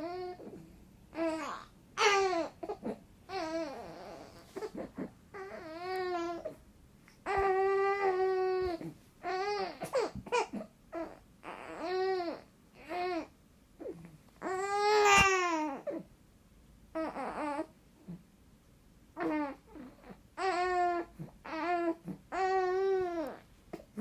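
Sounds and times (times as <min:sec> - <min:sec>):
baby crying whinily: 0:00.0 - 0:06.6, 0:07.3 - 0:16.1, 0:16.9 - 0:17.7, 0:19.2 - 0:24.0
baby babbling: 0:01.2 - 0:06.6.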